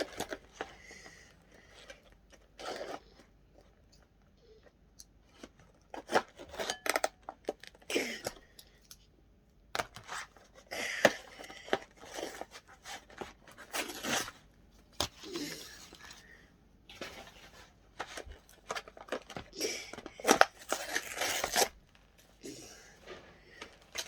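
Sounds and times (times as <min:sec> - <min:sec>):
plastic packaging crinkling and tearing: 0:11.6 - 0:14.4, 0:17.0 - 0:24.0.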